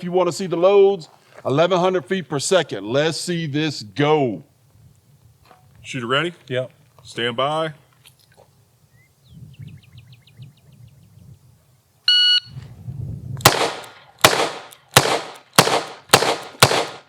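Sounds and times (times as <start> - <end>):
shot timer beep: 12.1 - 12.6
revolver gunshots: 13.4 - 17.0.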